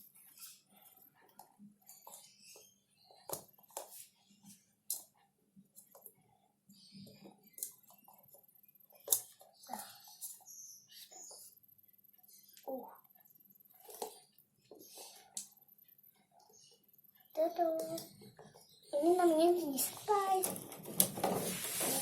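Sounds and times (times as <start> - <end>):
light scraping: 21.2 - 22.0.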